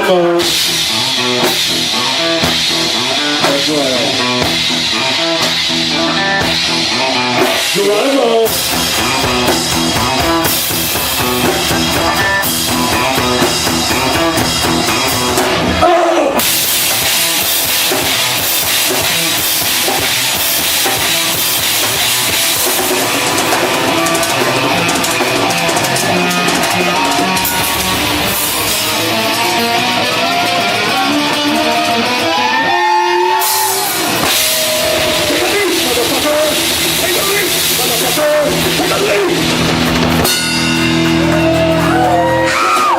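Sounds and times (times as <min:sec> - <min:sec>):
live rock band playing: 0:00.0 - 0:42.9.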